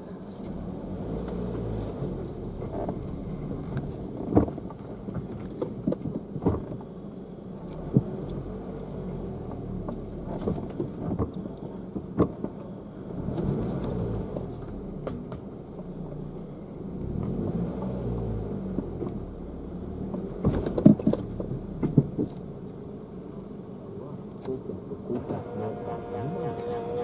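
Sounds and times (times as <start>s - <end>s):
car engine and road noise: 0.0s - 27.0s
knocks and rattles: 20.2s - 22.4s.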